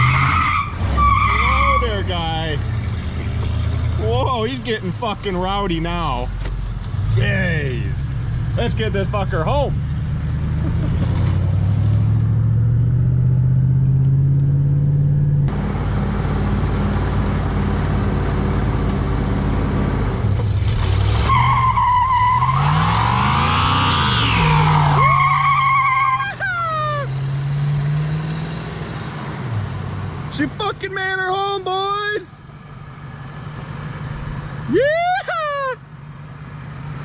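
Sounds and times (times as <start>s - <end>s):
car engine running: 1.9s - 20.6s.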